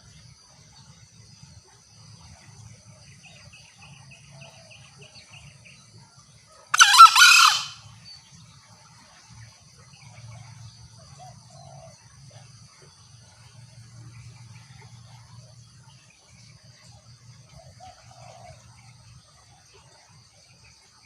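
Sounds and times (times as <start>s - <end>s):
insects chorus: 0.0s - 21.0s
junglefowl crowing: 6.7s - 7.8s.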